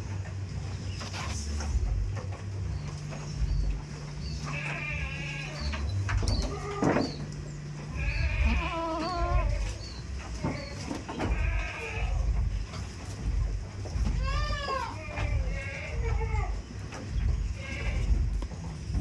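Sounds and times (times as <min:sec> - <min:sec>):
low rumbling background: 0:00.0 - 0:19.0
goats bleating: 0:04.2 - 0:12.9, 0:14.0 - 0:18.5.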